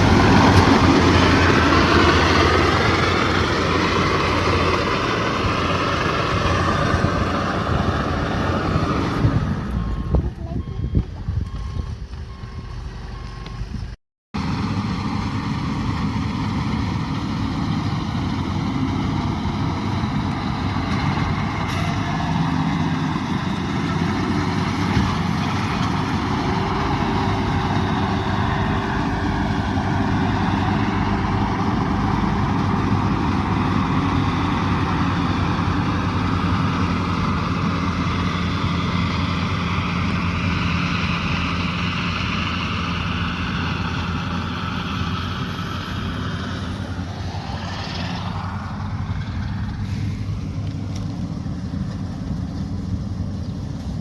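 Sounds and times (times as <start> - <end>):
combine harvester running: 0.0 - 54.0.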